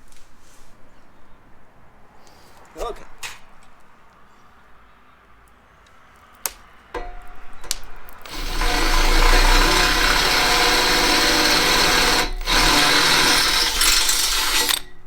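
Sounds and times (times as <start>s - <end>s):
electric drill drilling metal: 8.2s - 15.0s.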